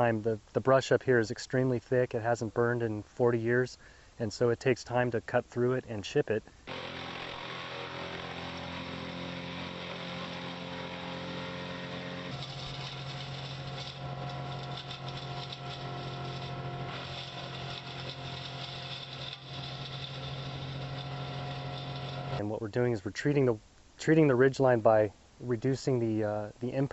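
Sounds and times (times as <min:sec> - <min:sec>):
chainsaw cutting brush: 0:06.6 - 0:22.4.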